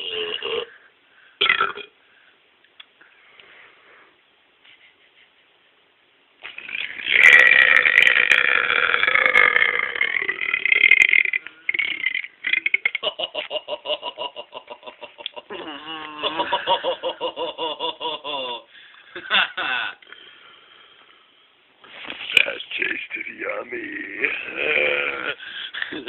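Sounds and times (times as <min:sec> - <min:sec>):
person belching loudly: 0:00.0 - 0:00.8, 0:01.4 - 0:01.9, 0:06.5 - 0:13.1, 0:15.5 - 0:16.5, 0:24.0 - 0:25.4.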